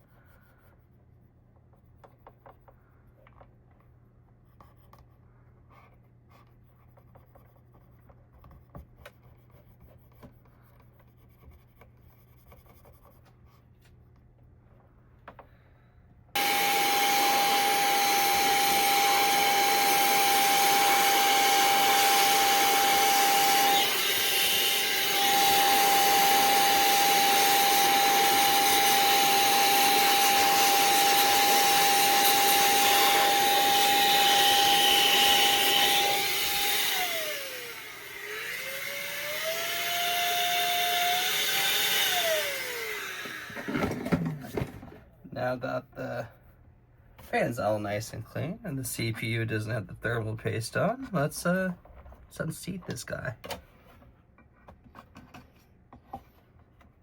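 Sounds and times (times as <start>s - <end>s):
small electric motor whining: 16.4s - 44.2s.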